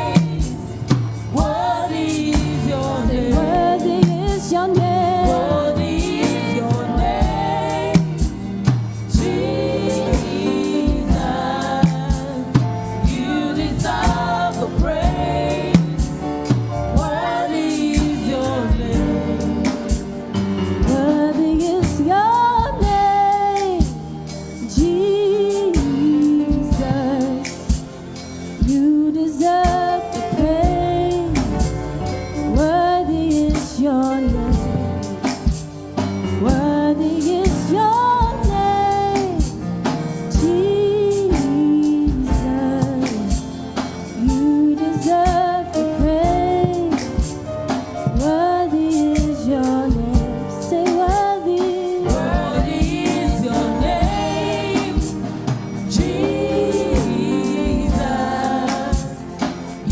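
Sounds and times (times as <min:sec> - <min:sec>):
gospel singing over a band: 0:00.0 - 0:59.9
steady drum beat: 0:00.0 - 0:59.9.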